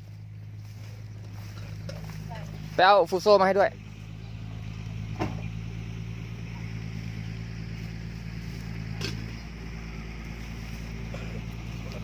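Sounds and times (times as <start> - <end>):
diesel truck engine idling: 0.0 - 12.0.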